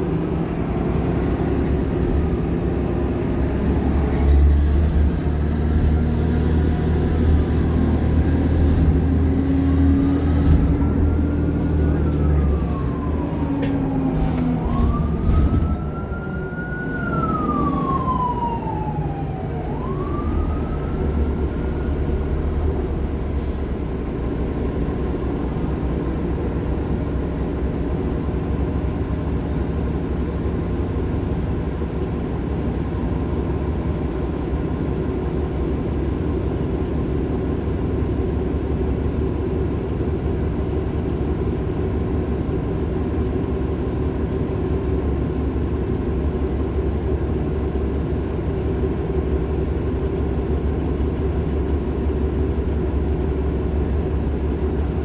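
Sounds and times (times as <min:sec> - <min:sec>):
bus engine running: 0:00.0 - 0:55.0
wailing siren: 0:07.4 - 0:23.3.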